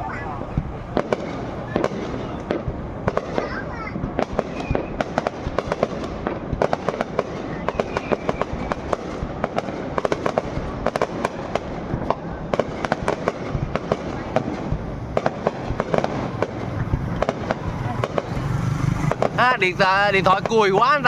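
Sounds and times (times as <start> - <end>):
fireworks banging: 0.0 - 21.0
low rumble: 14.6 - 20.5.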